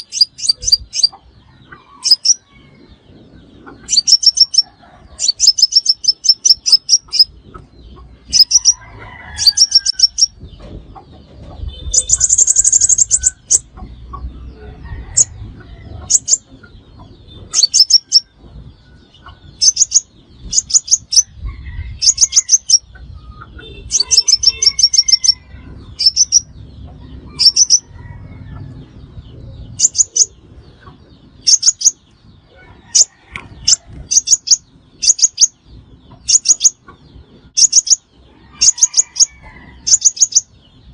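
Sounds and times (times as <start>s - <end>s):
sunbird trilling call: 0.0s - 2.6s, 3.6s - 7.3s, 8.3s - 8.8s, 9.4s - 10.4s, 11.6s - 13.8s, 16.0s - 18.3s, 19.2s - 26.5s, 27.4s - 27.9s, 29.7s - 30.4s, 31.4s - 32.0s, 32.9s - 36.9s, 37.5s - 40.5s.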